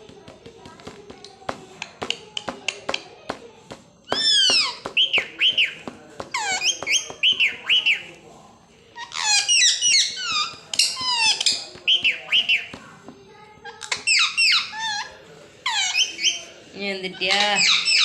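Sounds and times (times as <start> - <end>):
parrot chirps and squawks: 4.1 - 8.1, 9.0 - 12.7, 13.8 - 16.5, 17.4 - 18.0.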